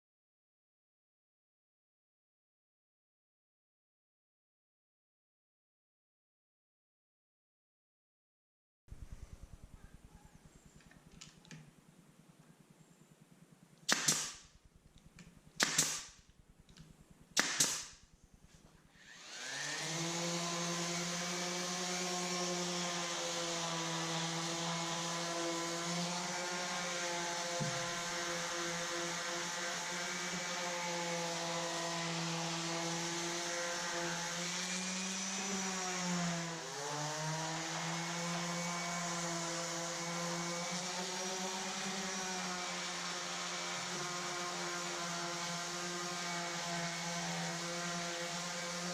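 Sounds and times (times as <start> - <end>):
nailer firing snaps: 13.8 - 14.5, 15.2 - 18.1.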